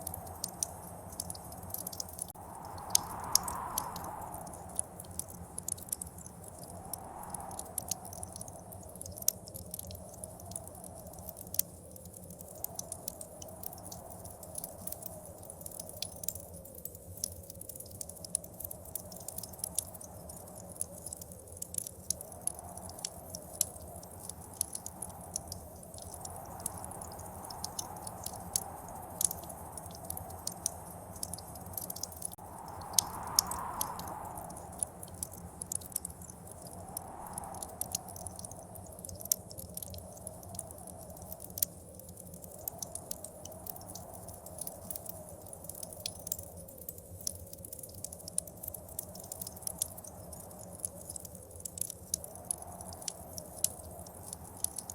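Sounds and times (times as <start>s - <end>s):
blizzard wind: 0.0s - 9.3s, 22.3s - 41.4s
wood fire crackling and popping: 0.0s - 54.9s.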